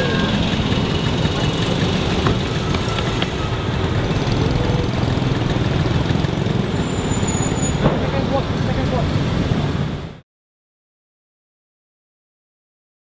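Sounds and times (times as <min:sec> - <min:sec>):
city street traffic hum: 0:00.0 - 0:10.2.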